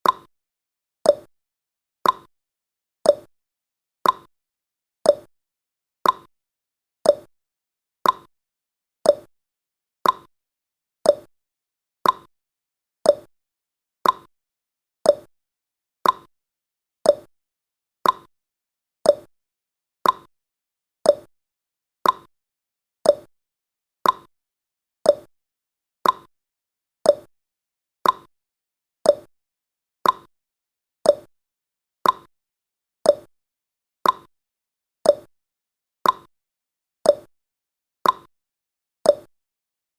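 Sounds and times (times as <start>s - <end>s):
clock ticking: 2.0s - 2.3s, 4.0s - 4.3s, 6.0s - 6.3s, 8.0s - 8.3s, 10.0s - 10.3s, 12.0s - 12.3s, 14.0s - 14.3s, 16.0s - 16.3s, 18.0s - 18.3s, 20.0s - 20.3s, 21.1s - 21.3s, 22.0s - 22.3s, 24.0s - 24.3s, 26.0s - 26.3s, 28.0s - 28.3s, 29.1s - 29.3s, 30.0s - 30.3s, 31.1s - 31.3s, 32.0s - 32.3s, 33.1s - 33.3s, 34.0s - 34.3s, 35.1s - 35.3s, 36.0s - 36.3s, 38.0s - 38.3s.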